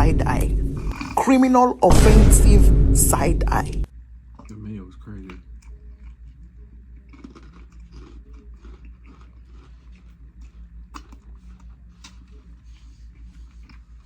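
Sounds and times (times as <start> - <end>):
person chewing food: 5.2 - 14.0.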